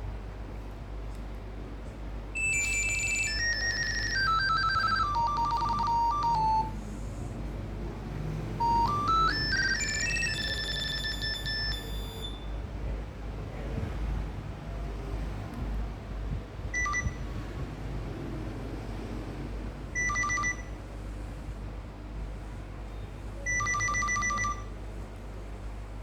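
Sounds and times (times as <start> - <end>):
phone ringtone electronic notes: 2.4 - 6.8, 8.6 - 12.4, 20.0 - 20.7, 23.5 - 24.7.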